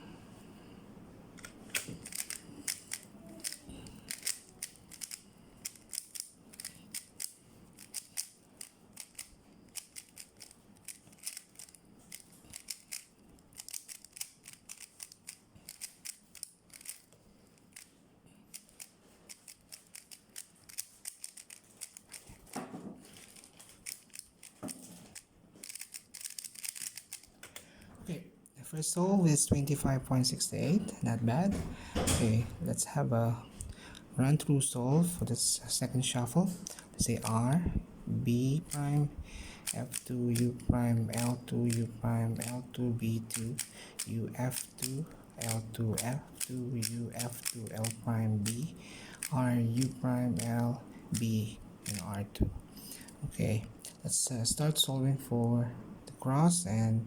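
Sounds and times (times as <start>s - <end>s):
speedcube layers clicking: 1.4s - 17.9s, 18.5s - 22.6s, 23.2s - 27.4s, 38.6s - 52.2s.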